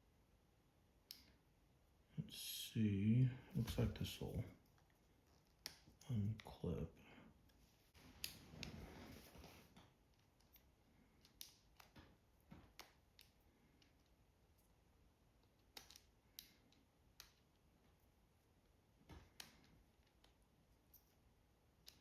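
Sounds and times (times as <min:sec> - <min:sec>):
faint handling noise: 0:03.4 - 0:06.7, 0:07.4 - 0:11.2.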